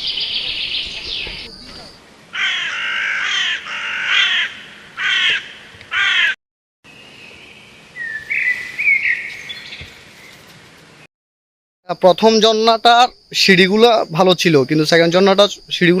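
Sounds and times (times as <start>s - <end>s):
bird calling loudly: 0.0s - 6.4s, 8.0s - 9.9s
faint rising bird call: 0.0s - 10.4s.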